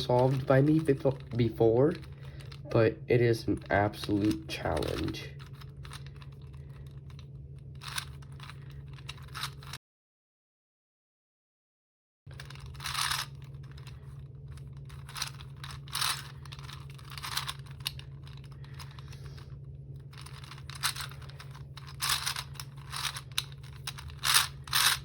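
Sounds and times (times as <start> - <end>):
plastic puzzle gears clicking: 0.0 - 2.6, 7.8 - 9.8, 12.3 - 19.2, 20.1 - 25.0
low hum: 0.0 - 9.8, 12.3 - 25.0.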